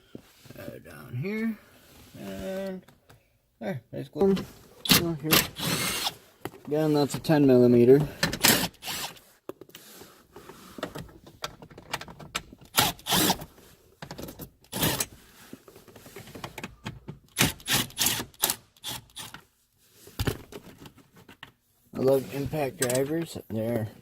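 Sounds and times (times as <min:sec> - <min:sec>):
hand tools and bolts rattling: 0:22.6 - 0:23.4.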